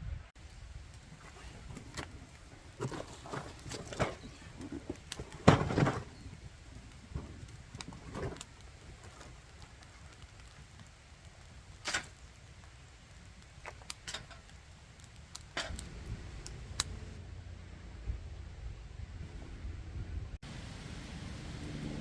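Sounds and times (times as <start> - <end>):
low rumble: 15.7 - 22.0.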